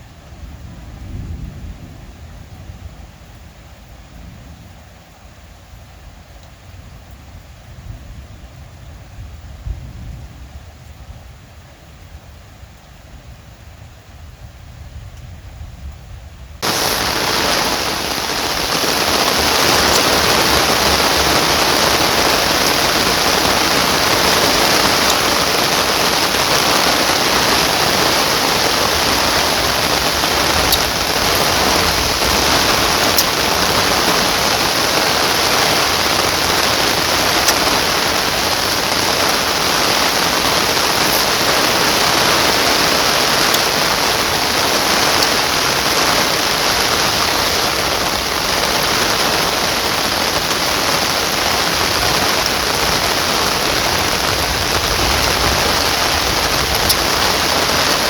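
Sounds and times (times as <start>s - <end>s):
heavy rain pouring: 16.6s - 58.0s.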